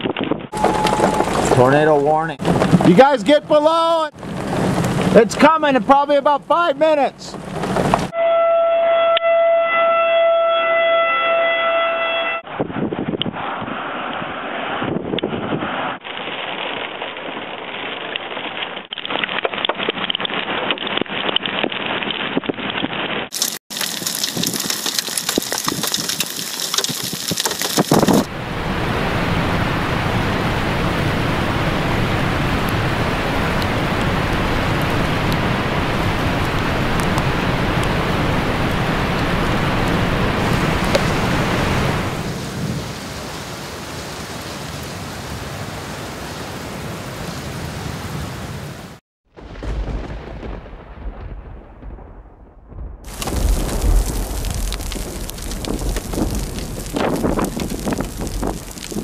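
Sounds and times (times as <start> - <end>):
heavy rain hiss: 23.4 - 48.9, 53.1 - 59.0.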